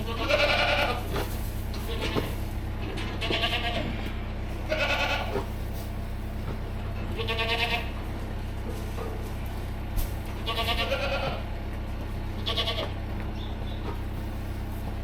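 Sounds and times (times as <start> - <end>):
goats bleating: 0.0 - 5.7, 6.9 - 8.4, 10.2 - 11.6, 12.2 - 13.2
low steady hum: 0.0 - 15.0.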